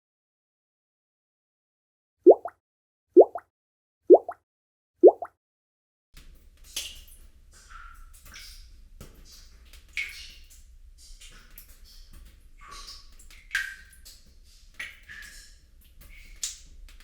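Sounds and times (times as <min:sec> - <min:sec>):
water drops plinking: 0:02.3 - 0:02.5, 0:03.2 - 0:03.4, 0:04.1 - 0:04.4, 0:05.0 - 0:05.3.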